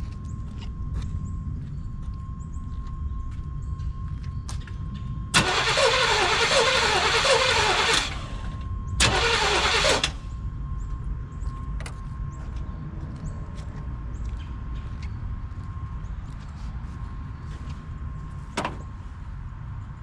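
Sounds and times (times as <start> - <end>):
starter cranking engine: 5.4 - 10.2.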